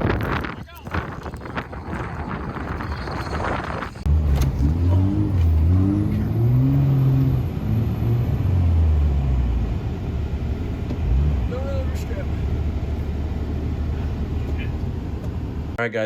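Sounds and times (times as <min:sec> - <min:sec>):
vehicle engine revving: 0:03.5 - 0:15.8.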